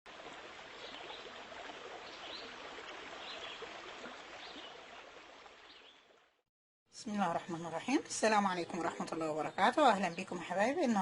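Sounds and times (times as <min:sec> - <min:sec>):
running water rushing: 0:00.1 - 0:06.4.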